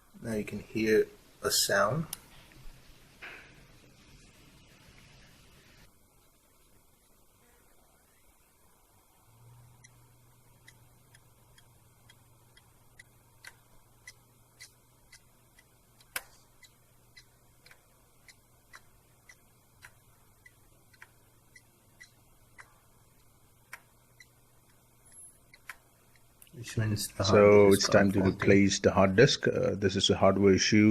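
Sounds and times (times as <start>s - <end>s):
hard disk drive humming: 4.6s - 30.1s
hard drive clicking: 9.7s - 26.6s.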